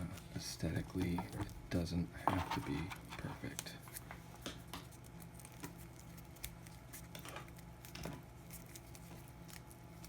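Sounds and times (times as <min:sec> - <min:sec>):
low steady hum: 0:00.0 - 0:10.0
tape crinkling: 0:02.5 - 0:10.0.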